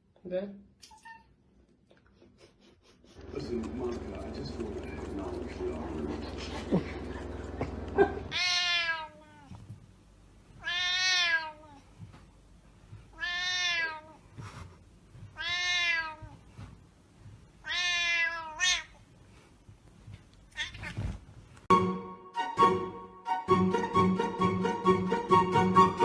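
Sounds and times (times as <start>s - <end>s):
cat meowing: 8.3s - 9.7s, 10.6s - 11.8s, 13.1s - 14.2s, 15.3s - 16.4s, 17.6s - 19.0s, 20.5s - 21.2s.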